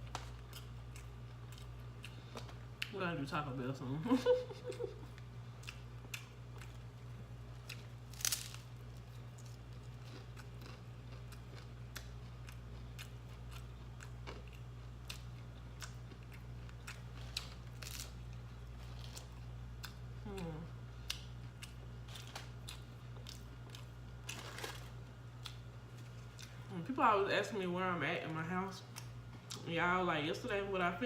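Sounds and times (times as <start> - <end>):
person chewing crunchy food: 0.0 - 2.9, 5.0 - 26.7
steady low hum: 0.0 - 31.0.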